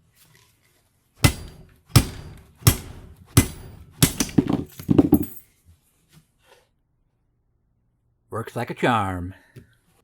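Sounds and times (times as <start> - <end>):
machete striking metal: 1.2 - 4.7.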